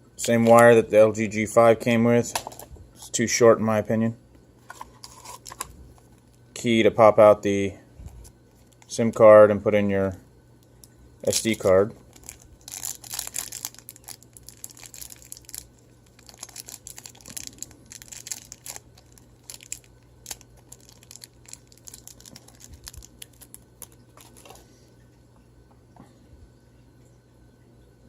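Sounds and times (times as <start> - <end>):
packaging crinkling and rustling: 4.6 - 6.4, 11.2 - 24.7.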